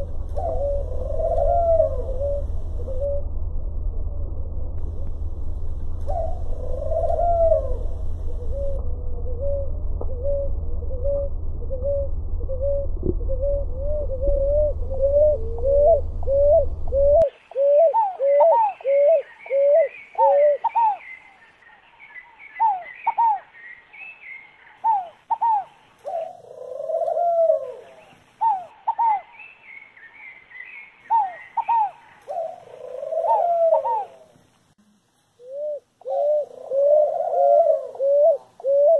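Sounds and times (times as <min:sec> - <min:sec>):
dove cooing: 0:00.0 - 0:03.2, 0:06.1 - 0:21.0, 0:24.8 - 0:29.3, 0:31.1 - 0:34.4, 0:35.4 - 0:38.9
low rumble: 0:00.0 - 0:17.3
small birds chirping: 0:15.2 - 0:34.5.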